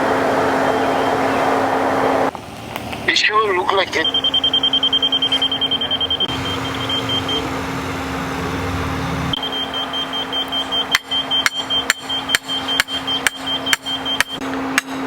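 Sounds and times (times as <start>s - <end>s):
construction vehicle engine running: 0.0s - 15.0s
fast-pulsing high electronic beep: 4.0s - 7.7s, 8.5s - 14.4s.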